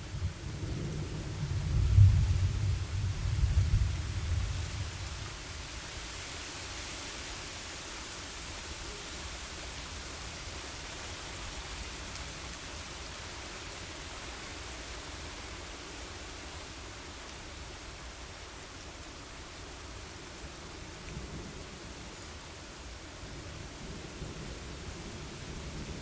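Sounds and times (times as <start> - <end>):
wind rumble: 0.0 - 5.7
steady rain: 0.0 - 26.0.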